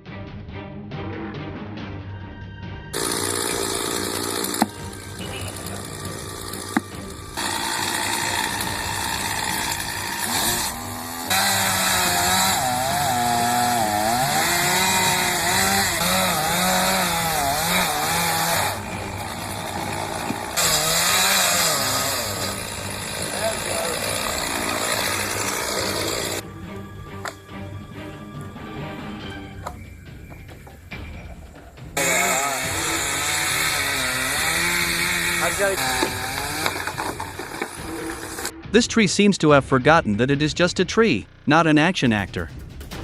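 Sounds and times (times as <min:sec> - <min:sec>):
chainsaw cutting wood: 0:03.0 - 0:26.4, 0:32.0 - 0:38.5.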